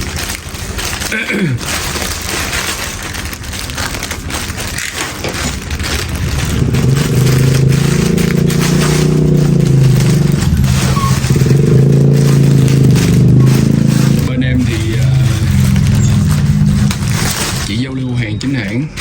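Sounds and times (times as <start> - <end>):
scraping and crackling: 0.0 - 19.0
engine droning: 1.9 - 19.0.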